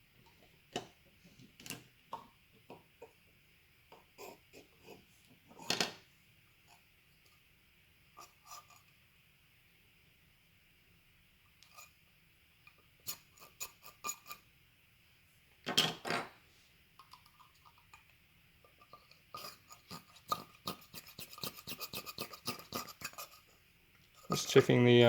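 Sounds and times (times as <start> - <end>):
scraping rub: 19.4 - 23.5.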